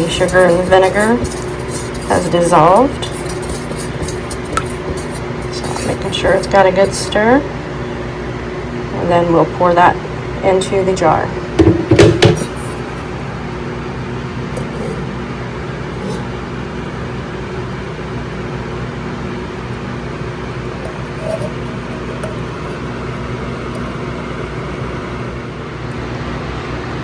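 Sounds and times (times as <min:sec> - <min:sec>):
steady low hum: 0:00.0 - 0:07.7.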